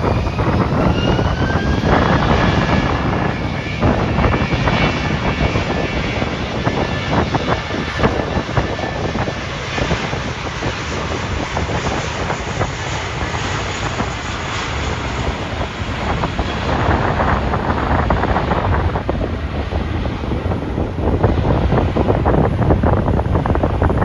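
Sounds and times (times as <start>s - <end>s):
jet airliner engine rush: 0.0s - 24.0s
wind buffeting microphone: 0.0s - 24.0s.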